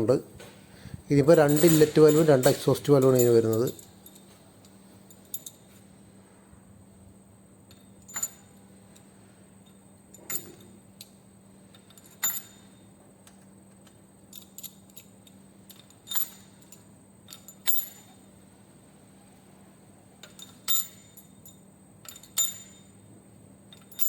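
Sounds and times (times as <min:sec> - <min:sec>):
faint steady hum: 0:00.0 - 0:24.0
metallic clinks of steel parts: 0:01.2 - 0:05.8, 0:07.7 - 0:18.3, 0:20.2 - 0:23.0, 0:23.7 - 0:24.0.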